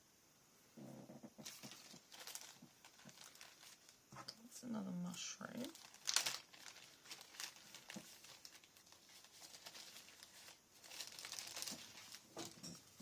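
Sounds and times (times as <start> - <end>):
paper rustling: 1.4 - 4.0, 5.6 - 13.0.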